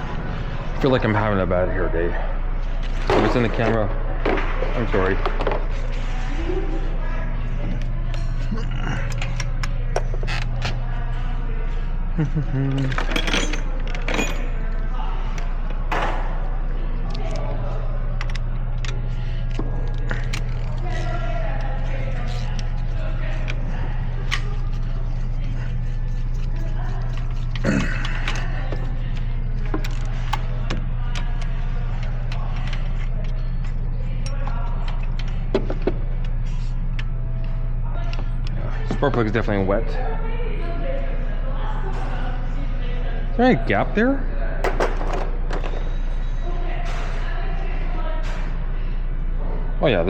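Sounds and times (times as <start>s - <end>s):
steady low hum: 0.0s - 50.0s
hand tool clicks and creaks: 8.1s - 10.8s, 18.2s - 21.1s, 24.2s - 33.4s.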